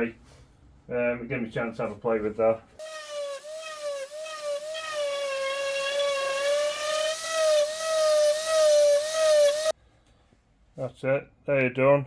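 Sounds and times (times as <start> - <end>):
power tool motor whining: 2.8 - 9.7.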